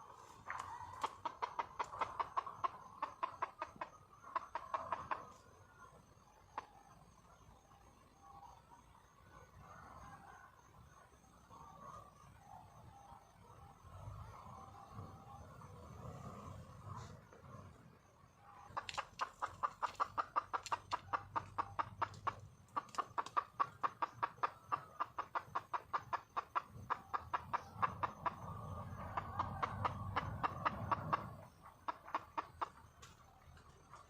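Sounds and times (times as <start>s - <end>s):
hen clucking rapidly: 0.0s - 7.0s, 18.4s - 34.0s.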